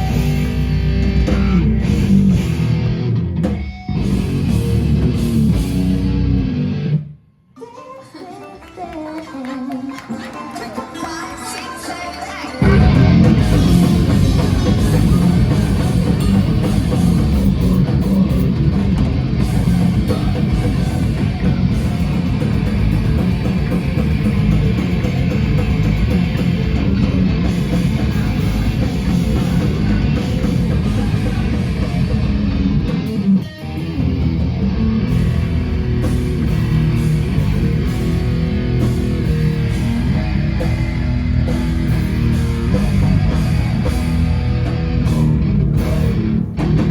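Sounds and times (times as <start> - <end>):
live band playing heavy rock: 0.0 - 7.0, 10.0 - 46.9.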